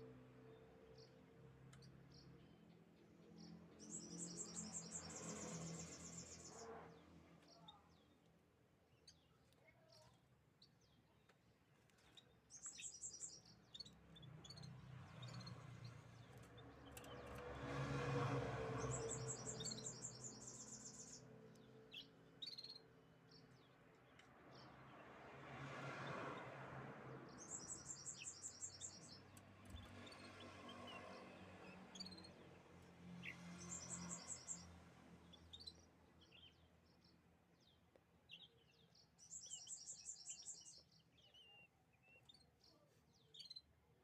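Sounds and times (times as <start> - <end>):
canaries chirping: 3.4 - 6.7, 12.0 - 23.7, 27.3 - 32.5, 33.1 - 42.6.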